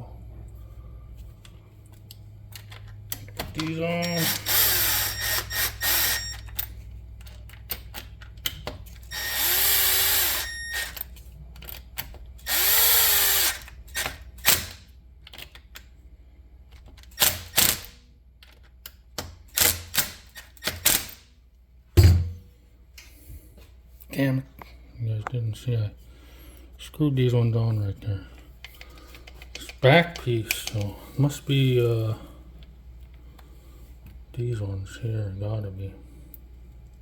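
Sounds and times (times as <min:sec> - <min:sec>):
tools clicking and clanking: 0:01.9 - 0:09.2, 0:28.4 - 0:31.0
power drill driving screws: 0:04.0 - 0:06.5, 0:09.1 - 0:11.0, 0:12.5 - 0:14.7.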